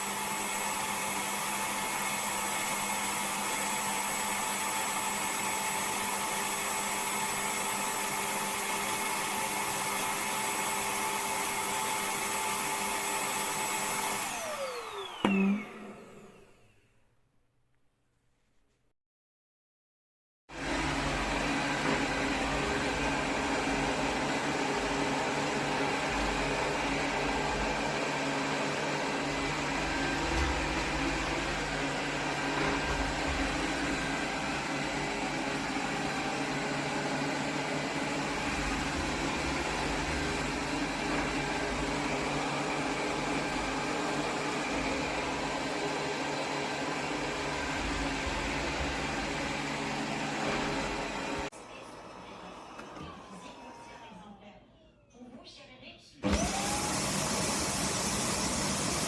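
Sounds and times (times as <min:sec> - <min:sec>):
vacuum suction fan running: 0:20.6 - 0:54.2, 0:56.2 - 0:59.0.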